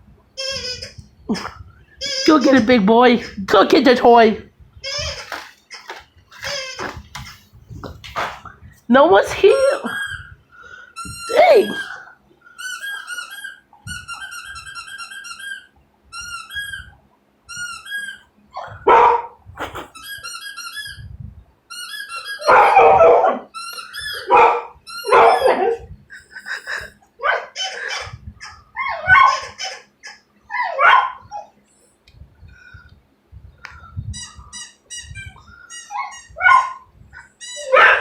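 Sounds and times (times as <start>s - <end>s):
squeaky dog toy from tv: 0.4s - 1.1s, 2.0s - 2.8s, 4.8s - 7.4s, 9.4s - 10.4s, 11.0s - 18.3s, 19.7s - 21.1s, 21.7s - 25.8s, 27.4s - 30.2s, 34.1s - 38.0s
dog barking: 18.6s - 19.4s, 22.4s - 23.5s, 24.2s - 25.8s, 30.6s - 31.3s, 36.4s - 36.8s, 37.6s - 38.0s.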